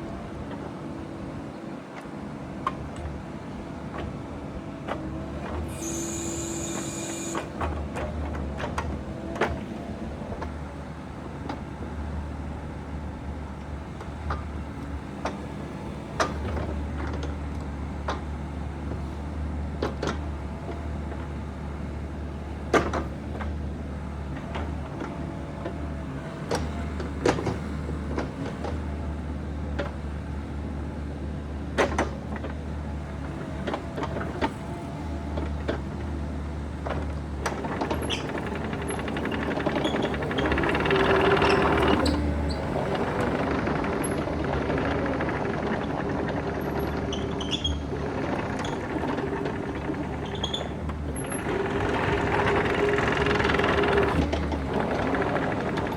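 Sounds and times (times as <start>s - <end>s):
mini excavator diesel engine: 0.0s - 55.9s.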